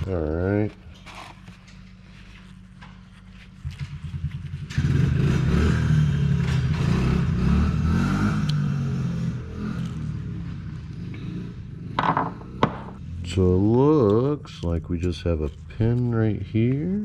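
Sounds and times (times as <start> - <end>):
motor vehicle engine revving: 4.0 - 13.0.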